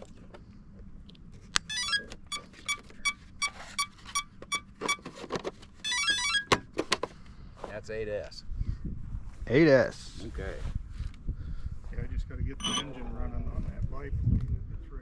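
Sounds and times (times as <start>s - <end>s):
electronic beeping tune: 1.7s - 3.2s, 12.6s - 13.0s.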